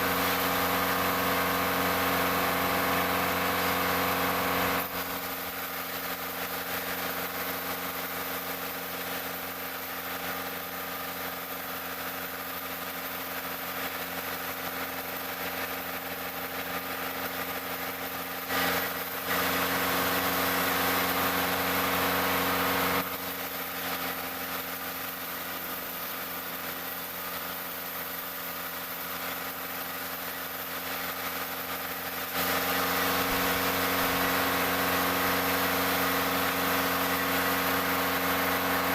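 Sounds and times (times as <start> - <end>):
sawmill machinery engine running: 0.0 - 38.9.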